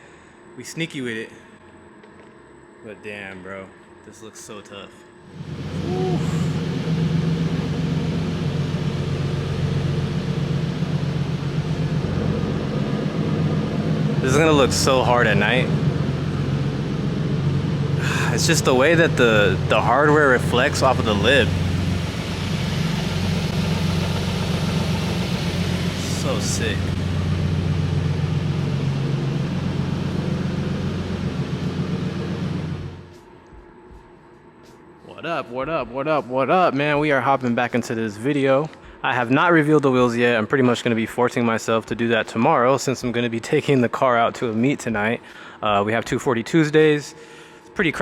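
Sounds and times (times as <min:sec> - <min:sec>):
car engine idling: 0:05.3 - 0:33.2.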